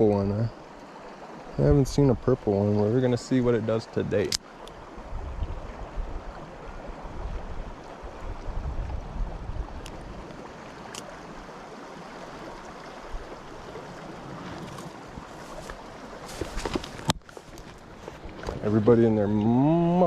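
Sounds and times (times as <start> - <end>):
creek running over rocks: 0.0 - 20.0.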